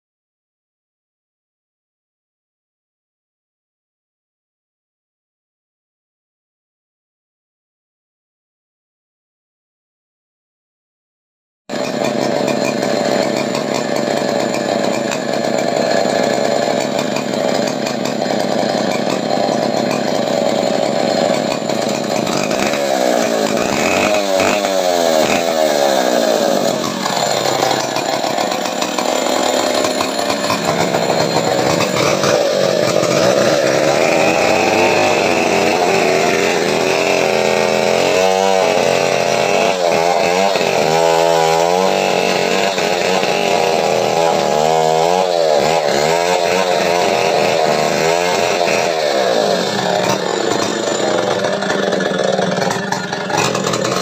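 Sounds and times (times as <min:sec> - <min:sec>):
small engine running: 0:11.7 - 0:54.0.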